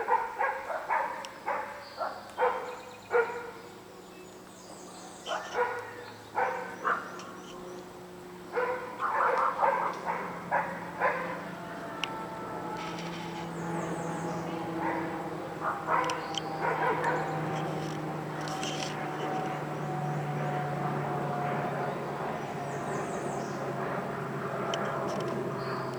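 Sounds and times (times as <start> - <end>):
dog barking: 0.0 - 3.6, 5.2 - 7.2, 8.5 - 11.5, 14.8 - 17.4
engine drone: 2.3 - 25.9.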